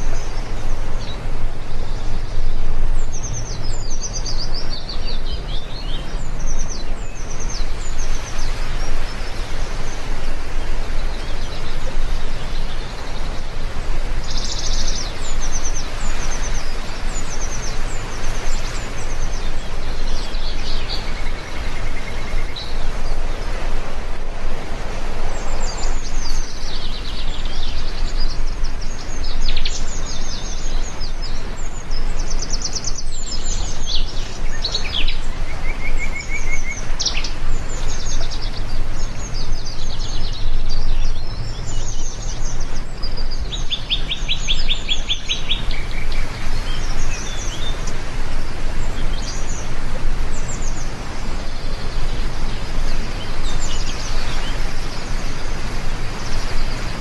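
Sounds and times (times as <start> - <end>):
birds chirping: 0.0 - 57.0
heavy rain falling: 15.0 - 29.1.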